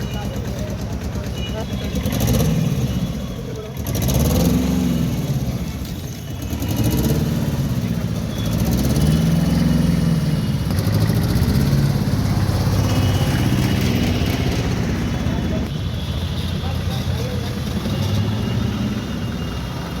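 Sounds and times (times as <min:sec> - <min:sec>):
vehicle engines revving: 0:00.0 - 0:15.8, 0:16.5 - 0:20.0.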